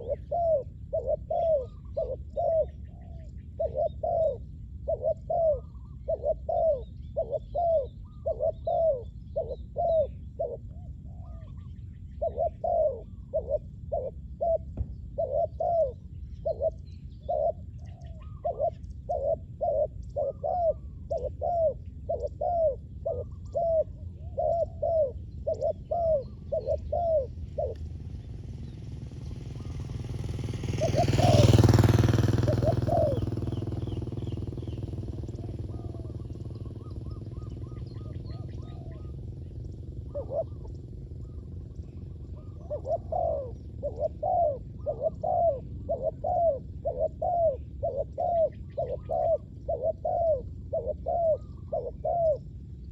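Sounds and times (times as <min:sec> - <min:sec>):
dove cooing: 0:00.0 - 0:52.9
vehicle passing: 0:24.7 - 0:51.1.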